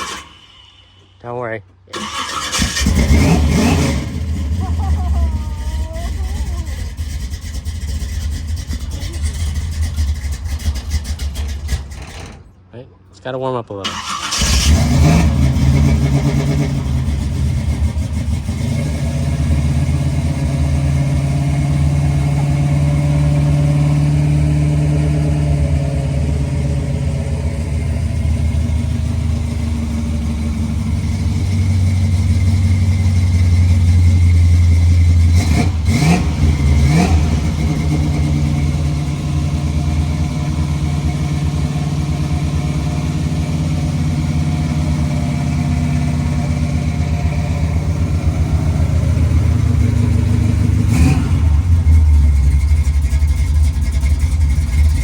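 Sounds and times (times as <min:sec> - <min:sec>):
sharp engine sounds: 0:00.0 - 0:12.4, 0:13.8 - 0:42.4
car engine idling: 0:00.0 - 0:12.8, 0:13.8 - 0:55.0.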